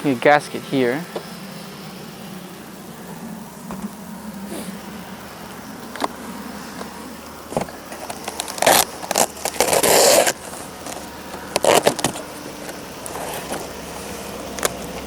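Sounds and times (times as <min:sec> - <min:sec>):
scraping rustling: 0:03.0 - 0:15.0.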